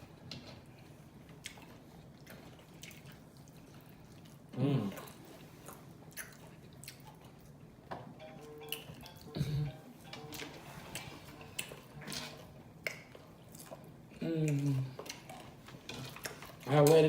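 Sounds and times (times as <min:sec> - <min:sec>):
wet chewing and lip-smacking: 0:01.2 - 0:07.8, 0:10.8 - 0:17.0.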